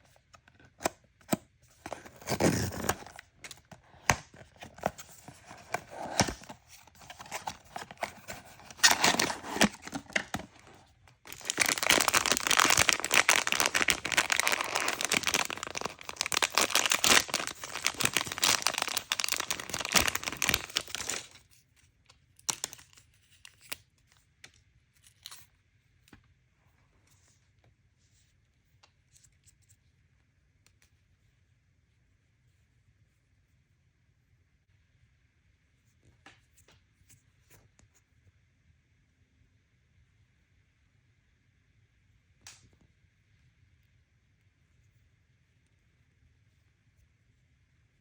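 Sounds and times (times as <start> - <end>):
packaging crinkling and tearing: 0.7 - 21.4, 22.5 - 23.8.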